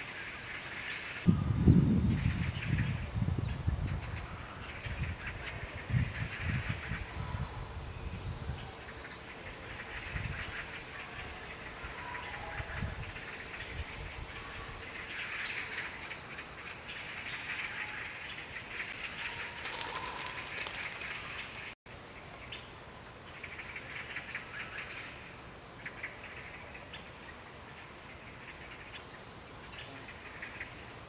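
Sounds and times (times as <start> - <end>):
lettuce leaves rustling and snapping: 19.6 - 21.7.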